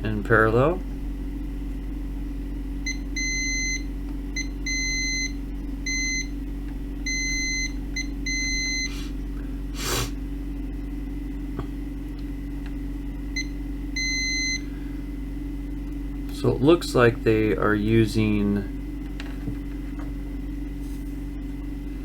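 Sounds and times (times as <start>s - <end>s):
low electrical hum: 0.0s - 22.0s
multimeter continuity beeps: 2.8s - 6.4s, 7.0s - 9.0s, 13.4s - 14.7s.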